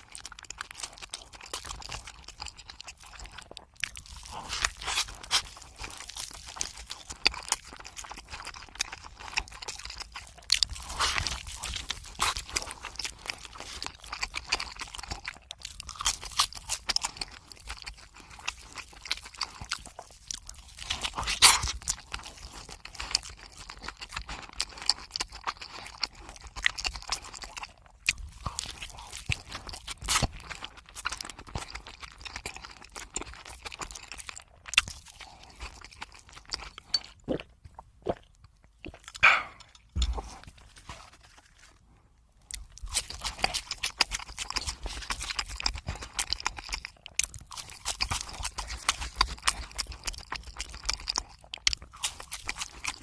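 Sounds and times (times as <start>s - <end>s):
chewing and crunching food: 0.0s - 53.0s
mouth clicks: 38.8s - 40.2s.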